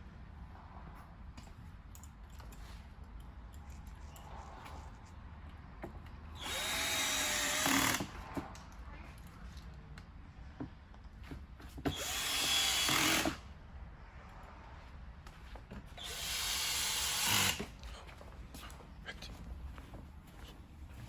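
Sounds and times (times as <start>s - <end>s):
drill driving screws into plastic: 6.4s - 8.2s, 11.9s - 13.4s, 16.0s - 17.7s.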